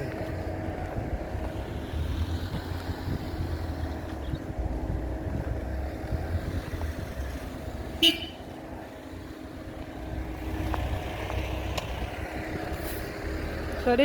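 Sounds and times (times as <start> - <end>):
road traffic rumbling: 0.0 - 14.0
vehicle horn toot: 8.0 - 8.5.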